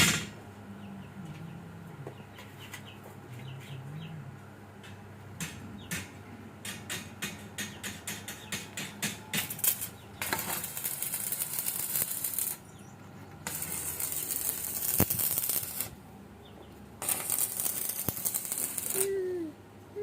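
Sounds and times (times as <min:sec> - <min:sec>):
arc welding crackling: 0:06.7 - 0:16.0, 0:17.0 - 0:19.2.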